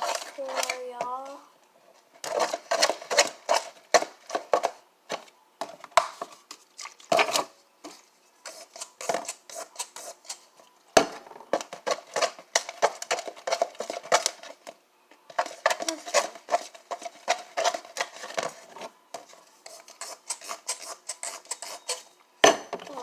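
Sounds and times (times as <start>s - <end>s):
utensil scraping slime in bowl: 8.4s - 10.4s, 19.2s - 22.1s.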